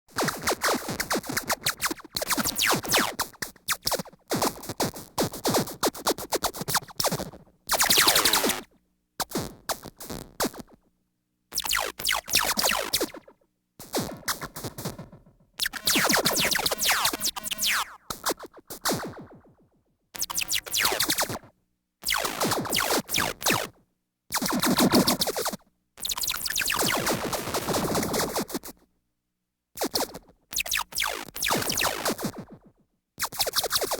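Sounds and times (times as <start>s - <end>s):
synthesized laser blasts: 15.6s - 18.0s.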